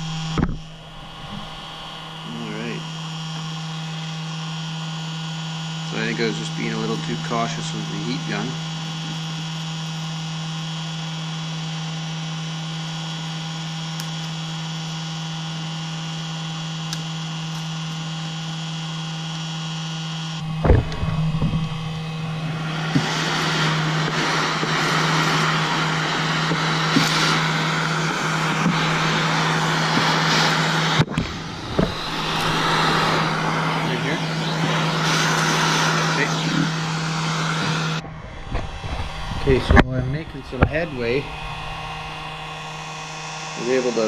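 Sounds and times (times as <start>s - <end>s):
rushing air: 0.0s - 2.3s, 20.4s - 43.4s
heat gun humming: 0.0s - 44.0s
knocks: 20.6s - 21.7s.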